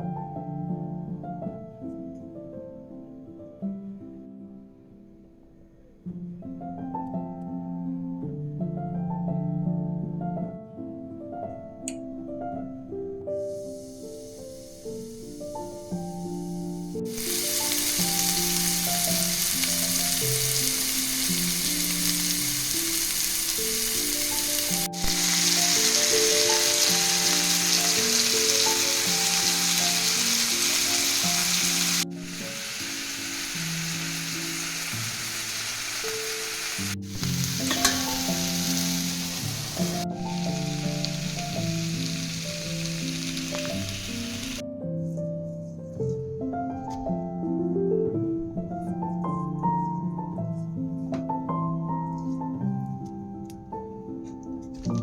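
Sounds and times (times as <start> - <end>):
background music: 0.0 - 55.0
food sizzling in a pan: 13.4 - 44.6.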